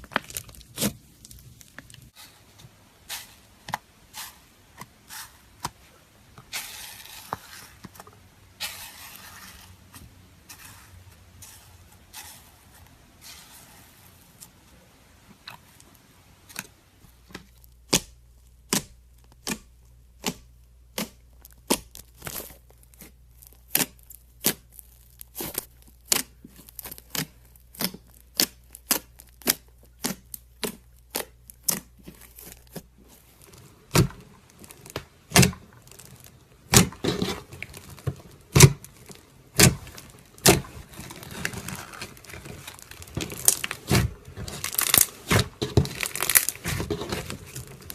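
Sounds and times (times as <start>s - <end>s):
sticky slime rustling: 0.0s - 47.9s
slime clicking and popping: 33.9s - 47.9s.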